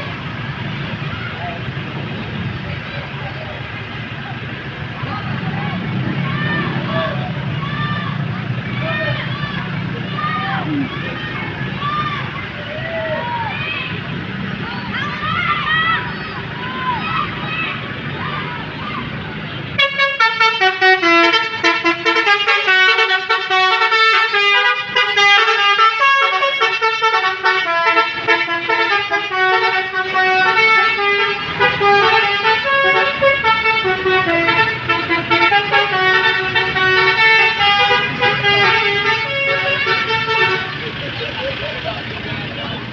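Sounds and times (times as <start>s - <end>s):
multi-tone bus horn tune: 19.7s - 41.0s.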